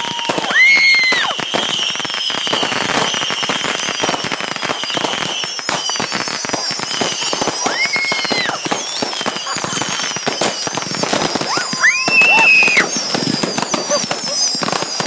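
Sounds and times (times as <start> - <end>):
high-pitched scream: 0.0 - 1.5, 7.5 - 8.7, 11.2 - 15.0
fireworks crackling pops: 0.0 - 15.0
fireworks high whistles: 0.0 - 15.0.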